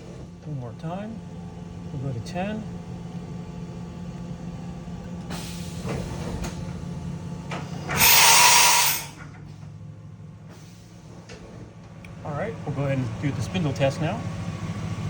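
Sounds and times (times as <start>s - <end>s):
air hiss: 7.9s - 9.2s.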